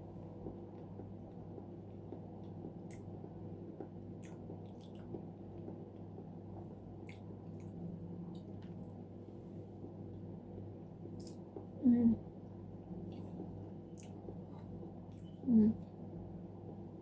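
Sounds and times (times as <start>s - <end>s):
low background hum: 0.0s - 17.0s
wet mouth clicks: 4.2s - 5.2s, 14.0s - 14.2s
moist squishy chewing: 4.2s - 6.1s.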